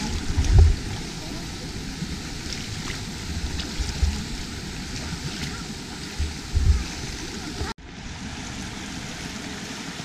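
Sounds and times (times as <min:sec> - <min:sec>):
low rumbling thumps: 0:00.0 - 0:01.0, 0:06.1 - 0:07.2
running water: 0:00.0 - 0:10.0.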